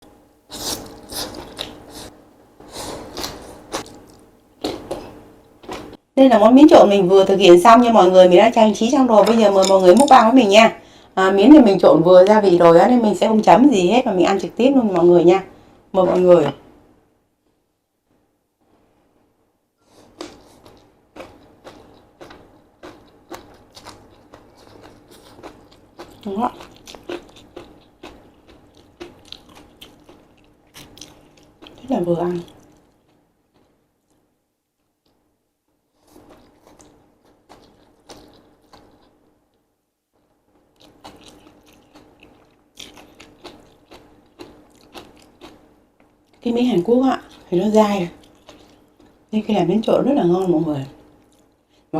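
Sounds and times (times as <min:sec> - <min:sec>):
chewing noodles with mouth clicks: 0:19.9 - 0:34.2, 0:36.0 - 0:39.2, 0:40.7 - 0:46.4, 0:48.1 - 0:49.3.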